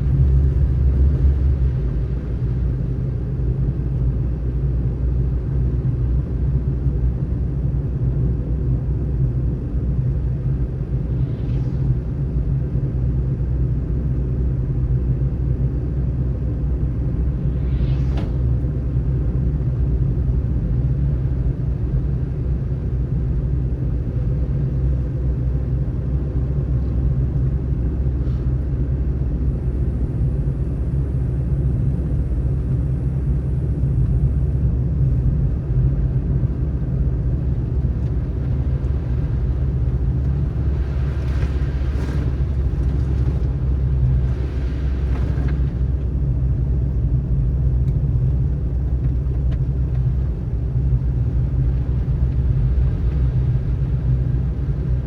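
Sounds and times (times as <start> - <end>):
car engine and road noise: 0.0 - 55.0
brief hissing: 11.0 - 12.2, 17.3 - 18.7.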